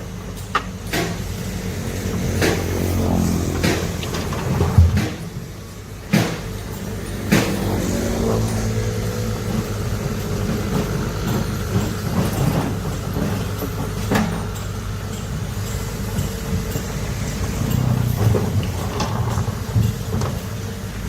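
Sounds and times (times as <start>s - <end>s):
diesel engine running: 0.0s - 21.0s.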